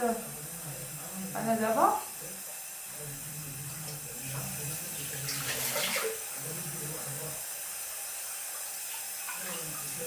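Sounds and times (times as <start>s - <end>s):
water running from a tap: 0.0s - 10.0s
water splashing: 3.8s - 6.4s.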